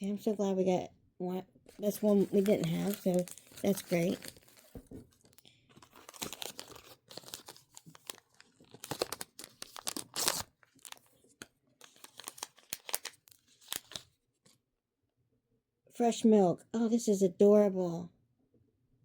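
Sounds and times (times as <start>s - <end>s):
plastic wrapper crinkling and tearing: 1.7s - 14.2s.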